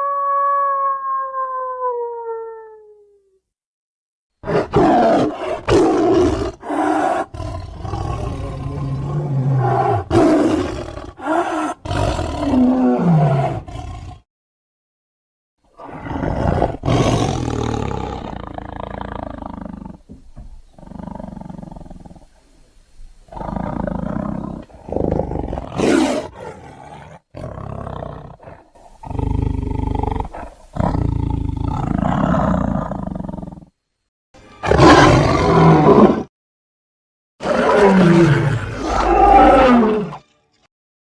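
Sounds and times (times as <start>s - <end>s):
creature roars and growls: 4.4s - 14.2s, 34.6s - 36.3s, 37.4s - 40.2s.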